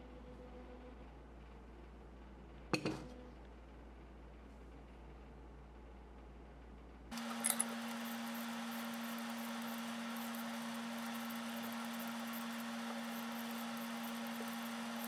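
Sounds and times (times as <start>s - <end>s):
electrical hum: 7.1s - 15.0s.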